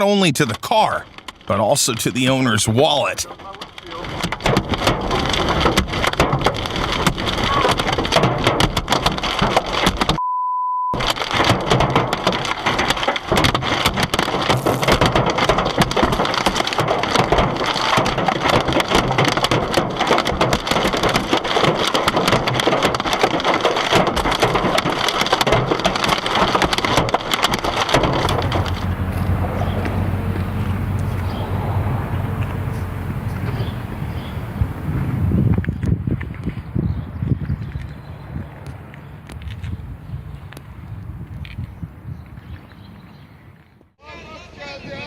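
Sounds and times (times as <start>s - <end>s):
hail clattering on a car: 3.3s - 10.2s, 11.0s - 35.3s
censor beep: 10.2s - 11.0s.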